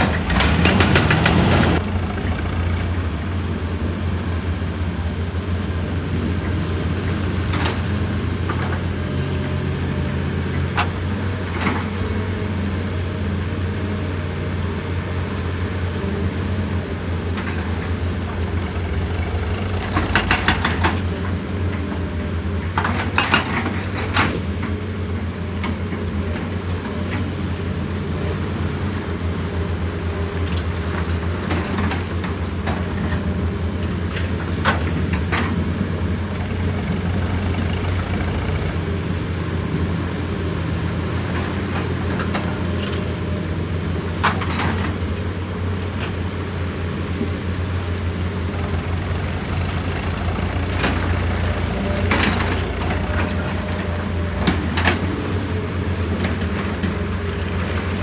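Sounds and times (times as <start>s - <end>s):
short clatters: 0.0s - 3.0s, 17.3s - 21.1s
excavator diesel engine running: 0.0s - 58.0s.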